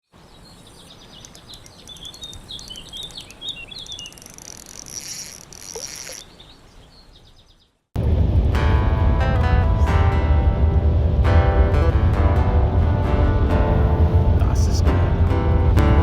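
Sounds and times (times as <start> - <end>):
insect buzz: 0.0 - 6.9
small birds chirping: 0.0 - 7.9
acoustic guitar music: 8.5 - 16.0.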